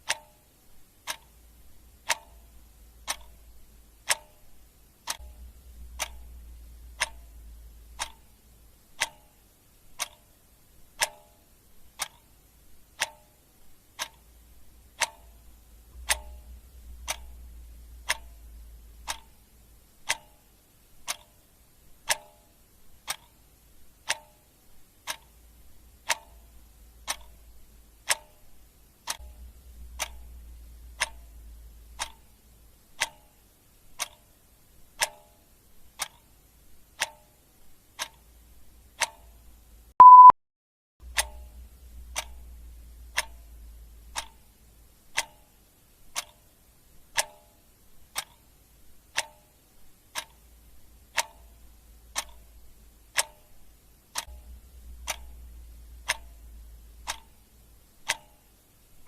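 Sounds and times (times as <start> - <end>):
clock ticking: 0.0 - 40.3, 41.0 - 59.0
short loud beep: 40.0 - 40.4.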